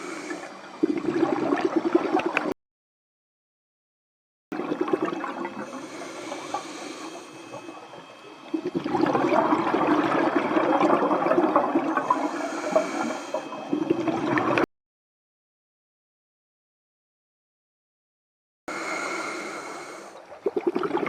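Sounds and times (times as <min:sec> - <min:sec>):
underwater bubbles rushing: 0:00.7 - 0:02.5, 0:04.5 - 0:14.6, 0:20.2 - 0:21.0.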